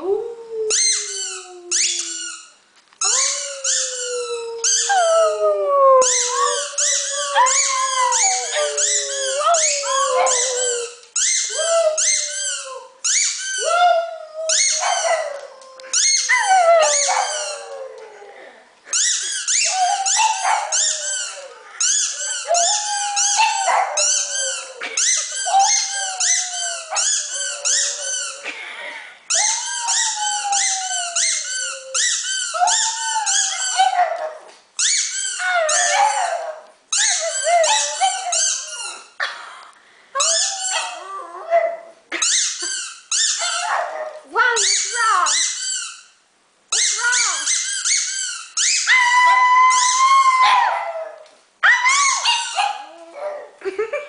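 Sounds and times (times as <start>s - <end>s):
squeaky toy squeaking: 0.7s - 4.9s, 6.1s - 13.7s, 15.9s - 16.4s, 18.9s - 28.3s, 29.3s - 33.9s, 34.8s - 36.2s, 36.9s - 39.1s, 40.2s - 41.0s, 42.1s - 43.7s, 44.6s - 48.9s
dog howling: 3.2s - 10.9s.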